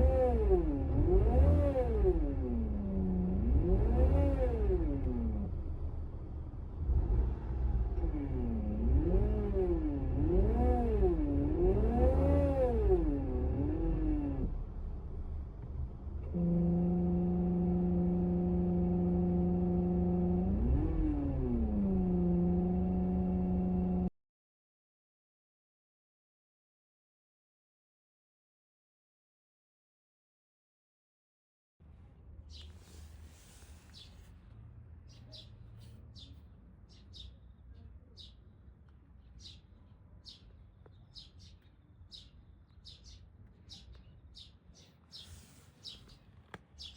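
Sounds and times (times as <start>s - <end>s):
car engine rumbling: 0.0s - 24.1s, 32.2s - 36.3s
small birds chirping: 32.5s - 34.4s, 35.0s - 46.9s.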